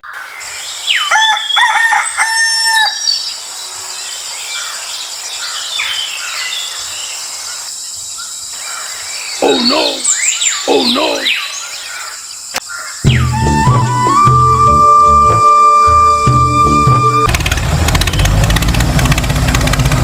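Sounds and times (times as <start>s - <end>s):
rooster crowing: 1.1s - 3.1s.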